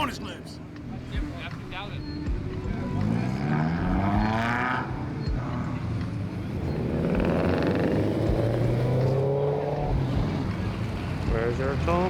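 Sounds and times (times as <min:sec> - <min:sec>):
car engine accelerating: 0:02.9 - 0:11.7.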